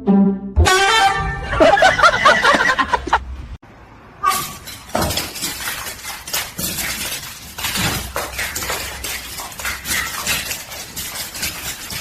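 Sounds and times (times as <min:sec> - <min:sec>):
hard objects clinking and knocking: 0:04.3 - 0:12.0.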